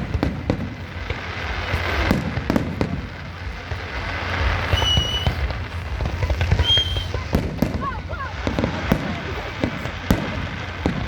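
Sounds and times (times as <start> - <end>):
fireworks bangs and crackles: 0.0 - 11.0
high firework whistle: 4.4 - 8.6.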